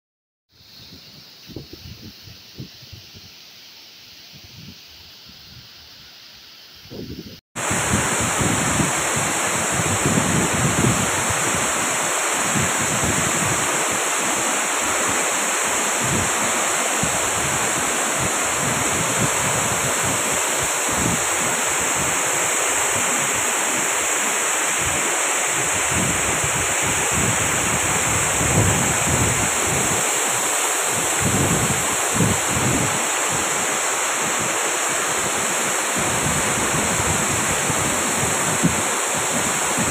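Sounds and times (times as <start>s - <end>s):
wind buffeting microphone: 6.9s - 24.0s, 24.7s - 39.9s
waterfall rushing: 7.6s - 39.9s.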